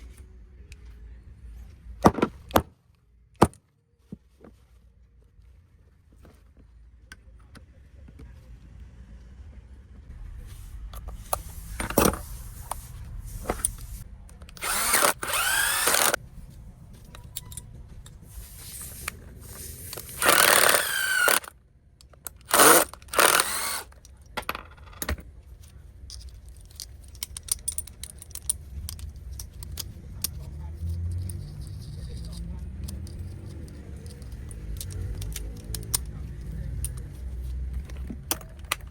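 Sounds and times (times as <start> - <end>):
rotary hammer drill whining: 14.6 - 16.2, 20.1 - 21.5, 22.5 - 23.9
handling clicks and knocks: 32.2 - 38.9.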